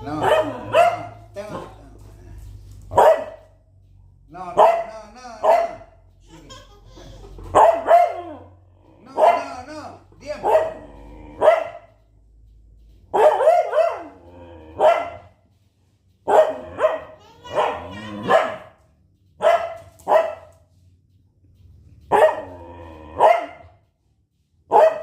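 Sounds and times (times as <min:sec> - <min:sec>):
dog barking and yowling: 0:00.0 - 0:01.8, 0:02.9 - 0:03.4, 0:04.6 - 0:05.9, 0:07.5 - 0:09.7, 0:10.3 - 0:11.9, 0:13.1 - 0:15.3, 0:16.2 - 0:18.8, 0:22.1 - 0:23.7, 0:24.7 - 0:25.0.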